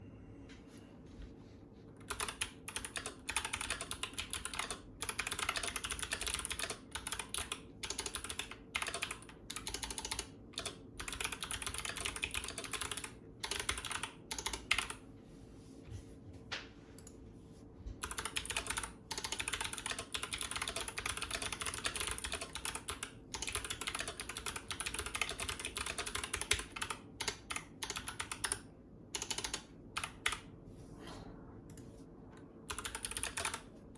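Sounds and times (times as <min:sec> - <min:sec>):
fast typing on clicky keyboard: 0:02.0 - 0:15.0, 0:18.0 - 0:30.5, 0:32.7 - 0:33.7.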